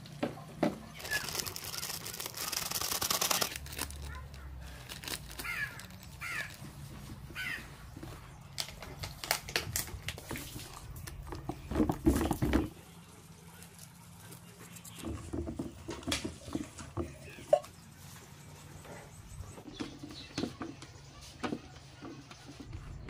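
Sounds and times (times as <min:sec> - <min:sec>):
sharp clicks and crackles: 0:00.9 - 0:06.8, 0:08.5 - 0:11.5
crow cawing: 0:05.4 - 0:06.6, 0:07.4 - 0:07.7.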